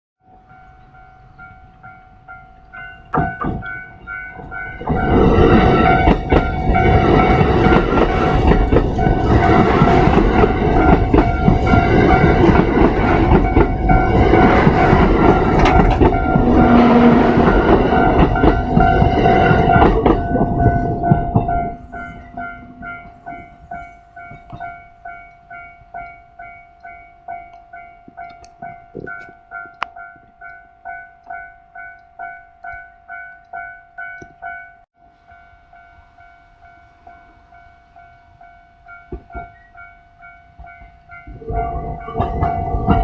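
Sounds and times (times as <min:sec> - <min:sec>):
electric train passing: 0:00.2 - 0:28.7, 0:34.8 - 0:43.0
wheels clicking over rail joints: 0:00.5 - 0:34.9, 0:40.6 - 0:43.0.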